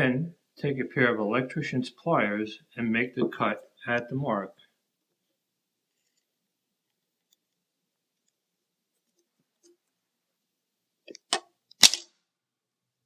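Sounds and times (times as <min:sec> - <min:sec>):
bolt snapping: 0:11.1 - 0:12.1.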